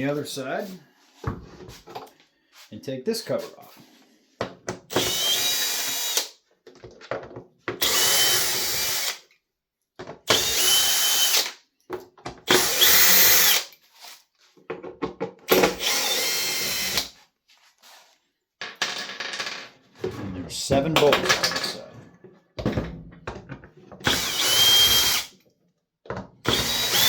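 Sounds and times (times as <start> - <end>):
cordless drill whining: 4.9 - 6.3, 7.8 - 9.2, 10.3 - 11.6, 12.5 - 13.7, 15.5 - 17.1, 24.0 - 25.4, 26.4 - 27.0.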